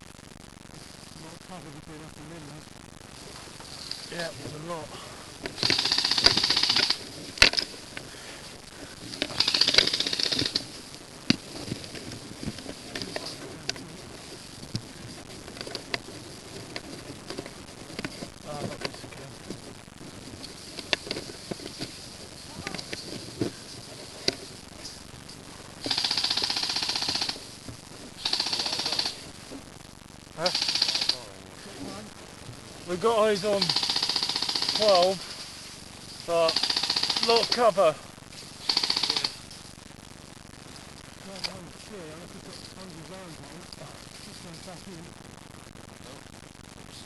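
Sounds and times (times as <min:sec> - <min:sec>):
sharp crack: 0:03.0 - 0:29.7, 0:30.4 - 0:31.6, 0:32.9 - 0:35.4, 0:36.2 - 0:39.7
airsoft rifle full-auto bursts: 0:05.6 - 0:07.8, 0:09.2 - 0:10.8, 0:25.8 - 0:27.4, 0:28.2 - 0:29.2, 0:30.5 - 0:31.2, 0:33.6 - 0:35.2, 0:36.5 - 0:37.6, 0:38.6 - 0:39.4.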